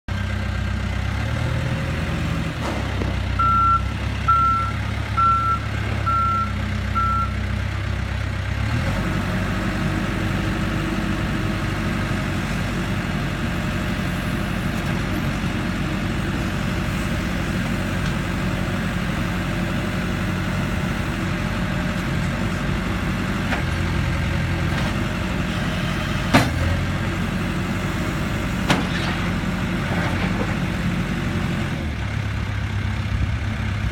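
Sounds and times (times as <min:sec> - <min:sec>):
diesel engine running: 0:00.1 - 0:33.9
backup alarm beeping: 0:03.4 - 0:07.4.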